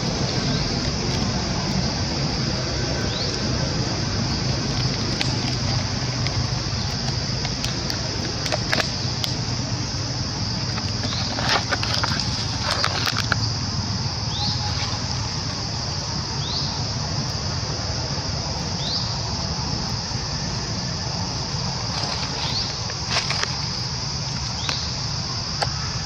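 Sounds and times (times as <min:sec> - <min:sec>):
high-pitched insect drone: 0:00.0 - 0:26.0
clicks and crunches: 0:04.3 - 0:09.6, 0:10.4 - 0:13.5, 0:21.8 - 0:24.8.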